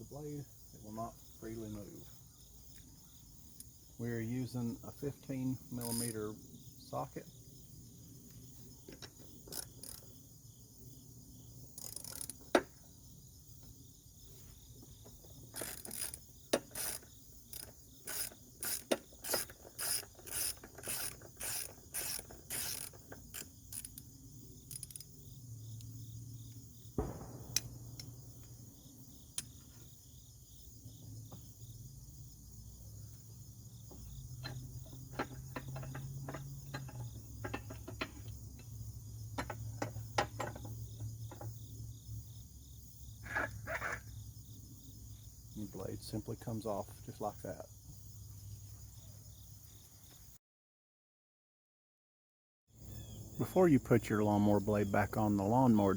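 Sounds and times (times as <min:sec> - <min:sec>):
socket ratchet clicking: 0:11.8 - 0:12.4, 0:15.5 - 0:24.1, 0:24.7 - 0:25.1.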